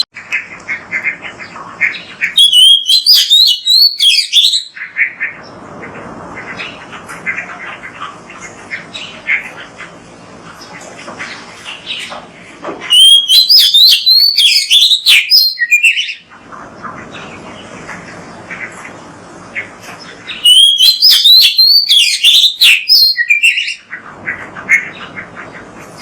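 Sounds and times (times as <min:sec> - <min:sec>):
bird chattering and twittering: 0:00.0 - 0:26.0
bird whistled song phrases: 0:02.3 - 0:04.8, 0:12.9 - 0:16.2, 0:20.3 - 0:23.8.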